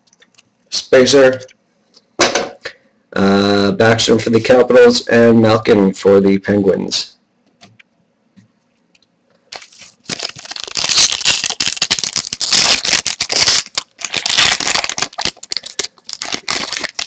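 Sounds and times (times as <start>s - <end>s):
foil wrapper tearing and crinkling: 9.5s - 17.0s.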